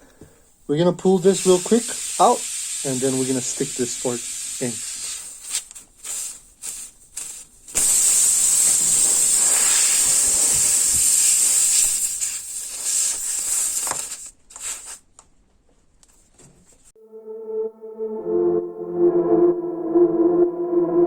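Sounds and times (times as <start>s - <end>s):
air hissing from tire: 1.4s - 15.0s.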